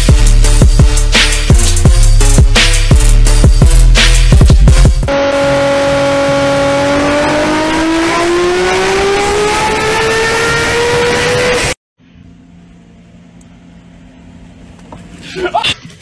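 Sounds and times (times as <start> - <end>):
engine running and revving: 0.0 - 11.8.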